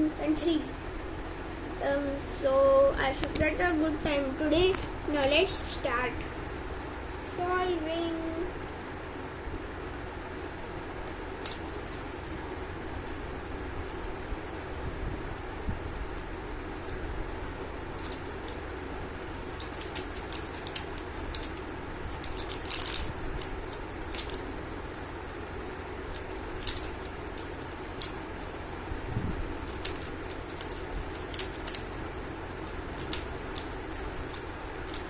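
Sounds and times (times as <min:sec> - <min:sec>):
low background hum: 0:00.0 - 0:35.0
puzzle cube plastic clicks: 0:19.4 - 0:24.6, 0:26.1 - 0:28.7, 0:29.6 - 0:31.9, 0:32.6 - 0:35.0.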